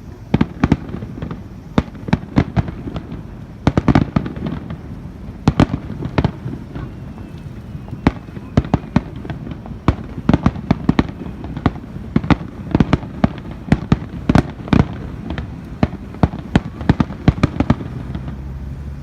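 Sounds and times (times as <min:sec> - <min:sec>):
fireworks bursting with sharp bangs: 0:00.0 - 0:19.0.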